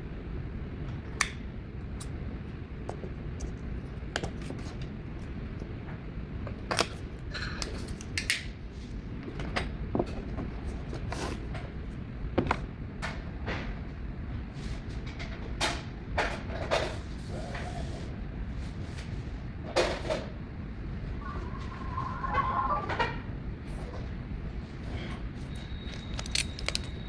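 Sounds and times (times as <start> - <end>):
small objects clicking and tapping: 25.8 - 27.0.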